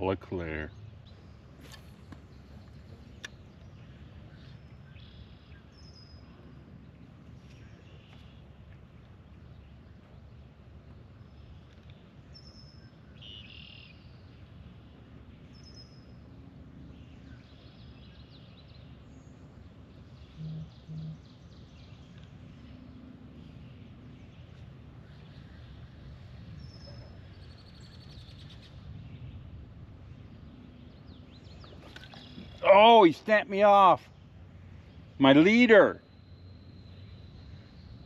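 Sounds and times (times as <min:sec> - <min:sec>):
birds chirping: 0:17.0 - 0:26.0, 0:26.6 - 0:34.0
short low beeps: 0:20.4 - 0:21.2.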